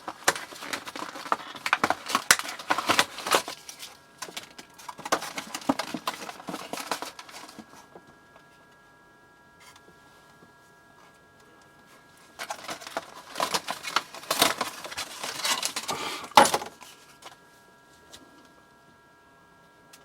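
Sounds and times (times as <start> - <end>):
plastic case clicks and rustles: 0.0 - 7.7, 12.4 - 16.8
faint high hum: 0.0 - 20.0.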